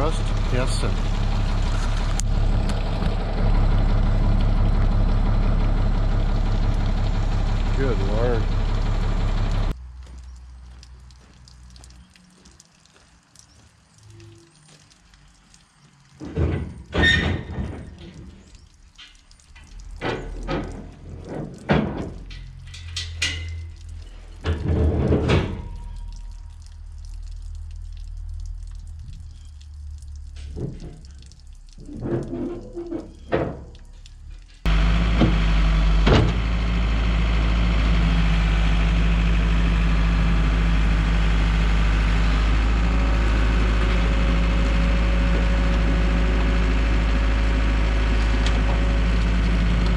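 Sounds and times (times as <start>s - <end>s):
irregular knocks and thunks: 16.2s - 18.4s, 19.9s - 22.5s, 31.9s - 33.9s
low steady hum: 17.7s - 49.9s.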